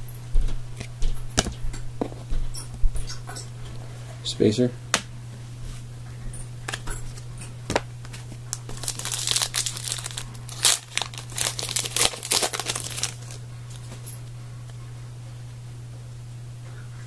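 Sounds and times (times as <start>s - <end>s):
low electrical hum: 0.0s - 17.0s
foil wrapper crinkling and tearing: 8.5s - 14.0s.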